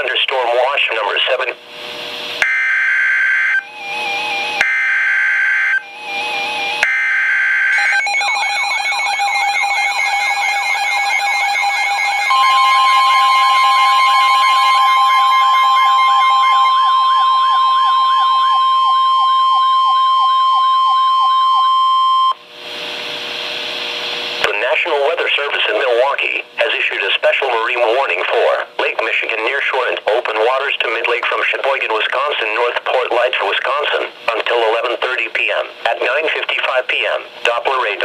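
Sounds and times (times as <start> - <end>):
steady alert tone: 2.4 - 21.8
warbling siren-like tones: 2.4 - 22.3.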